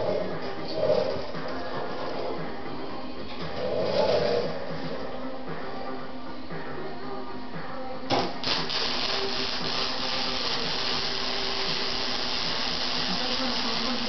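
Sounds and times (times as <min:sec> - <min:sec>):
welder sizzling: 0:08.1 - 0:14.0
welding arc crack: 0:08.1 - 0:14.0.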